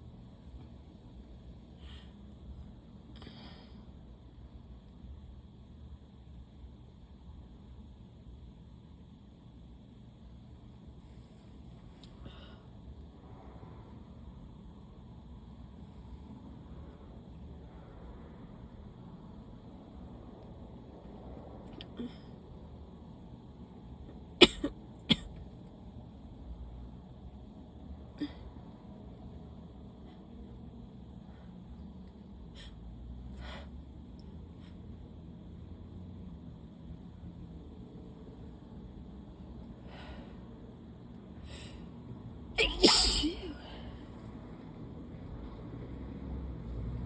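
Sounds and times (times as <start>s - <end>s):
faint low rumble: 0.0s - 47.0s
person sneezing: 42.6s - 43.8s.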